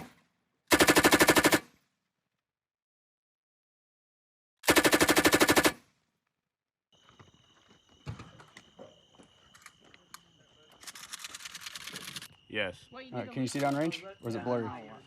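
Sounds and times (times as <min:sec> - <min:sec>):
machine gun firing bursts: 0:00.7 - 0:01.7, 0:04.6 - 0:05.8.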